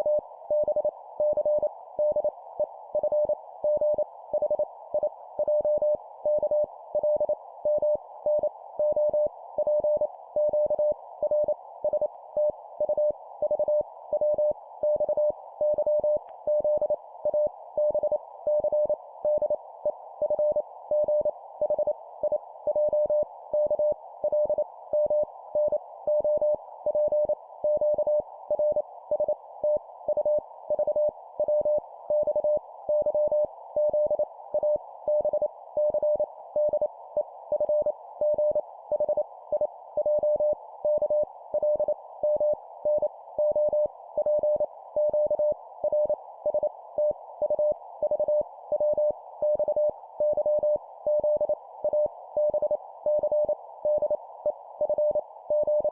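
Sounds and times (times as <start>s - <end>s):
morse code beeps: 40.0s - 54.2s, 54.8s - 55.9s.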